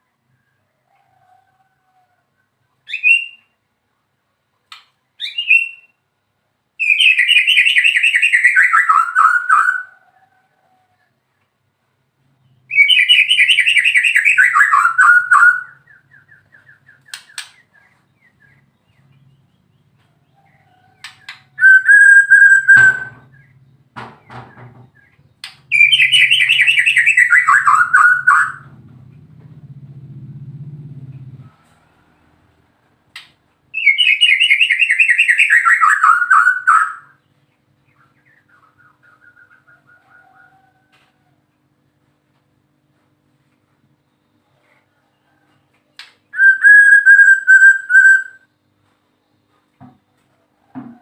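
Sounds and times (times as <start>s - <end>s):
bird whistle: 2.9s - 3.5s, 5.2s - 6.0s, 6.8s - 9.9s, 12.7s - 17.4s, 21.6s - 23.5s, 25.7s - 28.6s, 33.8s - 37.2s, 46.3s - 48.5s
bird singing rapid trill: 6.8s - 9.9s, 12.4s - 19.9s, 20.7s - 24.4s, 25.0s - 28.7s, 33.8s - 39.9s, 46.3s - 48.5s.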